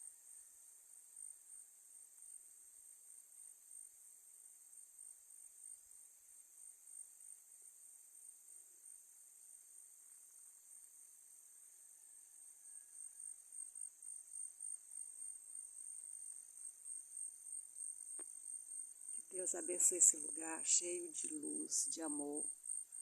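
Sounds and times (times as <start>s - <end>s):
crickets trilling: 13.0s - 23.0s.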